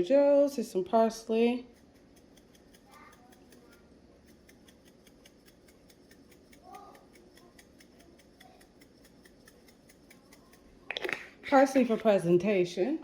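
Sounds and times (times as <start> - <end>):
faint even ticking: 1.7 - 10.8.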